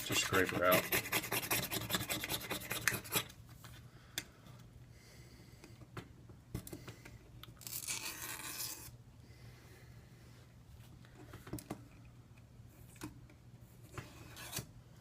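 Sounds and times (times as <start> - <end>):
scraper rasping on phone frame: 0.0 - 3.3.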